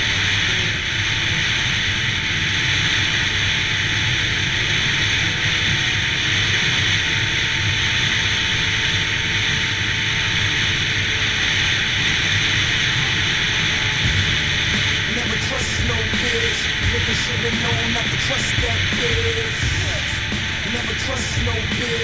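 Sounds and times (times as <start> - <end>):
snowmobile engine running: 14.0 - 22.0.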